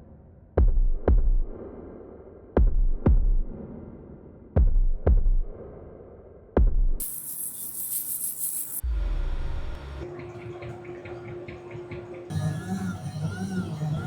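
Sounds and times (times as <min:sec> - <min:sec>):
electronic heartbeat thumps: 0:00.6 - 0:01.6, 0:02.6 - 0:03.5, 0:04.6 - 0:05.6, 0:06.6 - 0:07.0.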